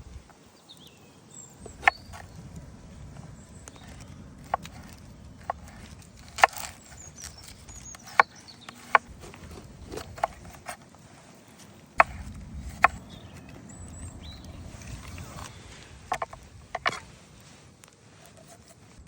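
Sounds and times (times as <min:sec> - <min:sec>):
low outdoor background: 0:00.0 - 0:19.0.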